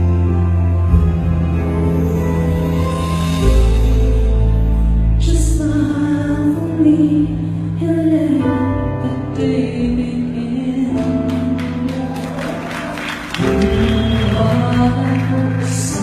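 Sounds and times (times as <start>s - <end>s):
woman singing: 5.2s - 12.7s, 13.4s - 16.0s.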